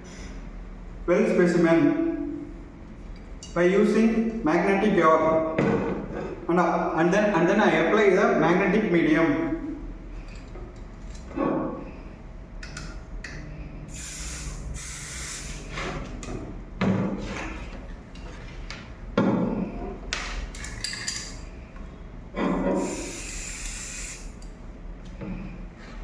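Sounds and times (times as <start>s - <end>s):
aerosol can spraying: 13.9s - 15.7s, 22.8s - 24.4s.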